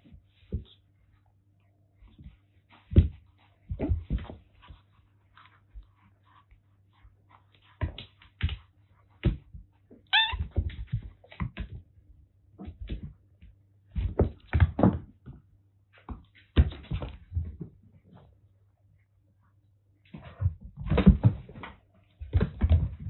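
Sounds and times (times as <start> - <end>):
kittens thumping and scuffling: 2.0 - 12.0, 12.6 - 18.4, 20.0 - 23.0
kitten meow: 10.1 - 10.5.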